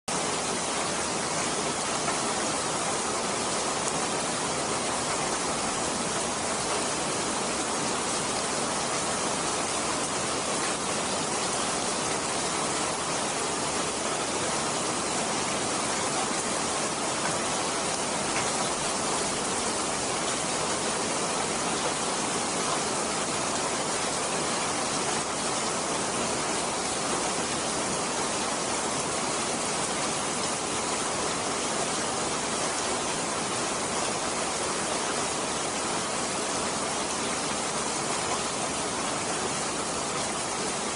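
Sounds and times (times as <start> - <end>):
heavy rain falling: 0.1 - 40.9.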